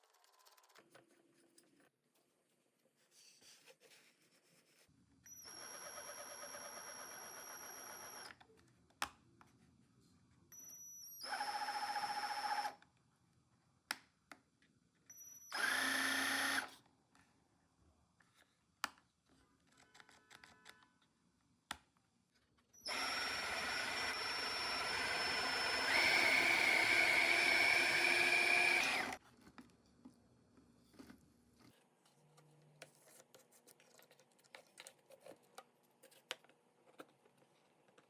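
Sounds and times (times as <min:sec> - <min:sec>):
electric motor whining: 0:15.6 - 0:16.7, 0:22.8 - 0:29.2.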